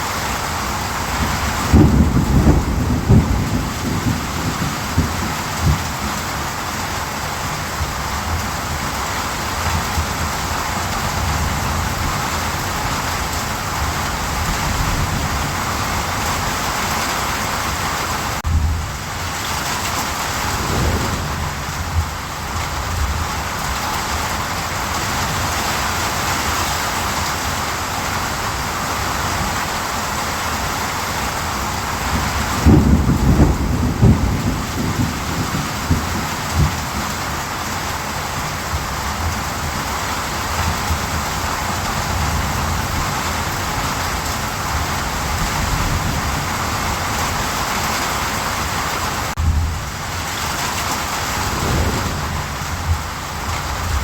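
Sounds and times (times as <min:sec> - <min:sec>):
heavy rain falling: 0:00.0 - 0:54.0
thunder rumbling: 0:01.1 - 0:06.8, 0:18.4 - 0:25.4, 0:32.1 - 0:37.3, 0:51.0 - 0:54.0.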